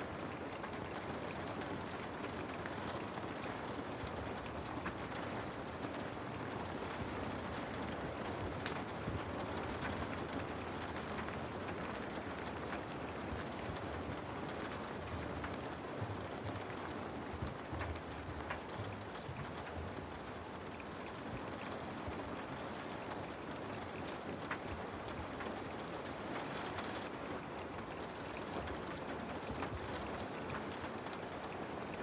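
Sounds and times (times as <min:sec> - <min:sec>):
rain on a window: 0:00.0 - 0:32.0
raindrop taps: 0:00.0 - 0:32.0.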